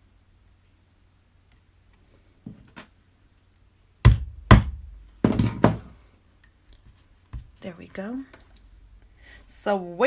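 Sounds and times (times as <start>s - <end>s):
rubber mallet striking leather punch: 4.0s - 5.4s.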